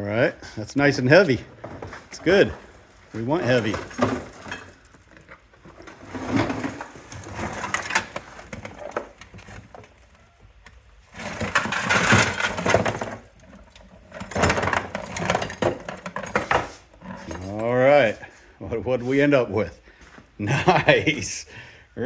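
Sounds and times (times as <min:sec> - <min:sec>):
scrap copper clattering: 0:00.4 - 0:10.0, 0:11.1 - 0:17.6.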